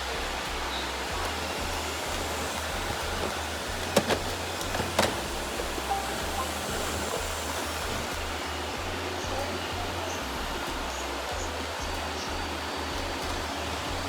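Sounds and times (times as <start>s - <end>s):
robot vacuum motor running: 0.0s - 14.0s.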